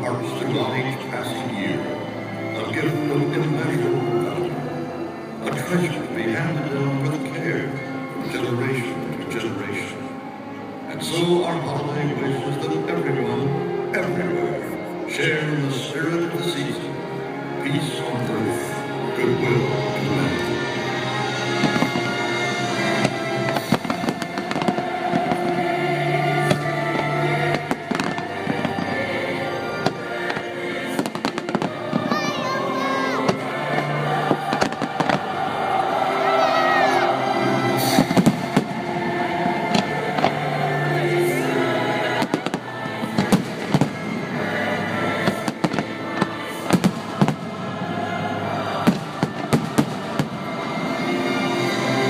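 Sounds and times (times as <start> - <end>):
music with held notes: 0.0 - 52.0
fireworks bangs and crackles: 21.2 - 35.4, 36.4 - 40.7, 41.9 - 52.0.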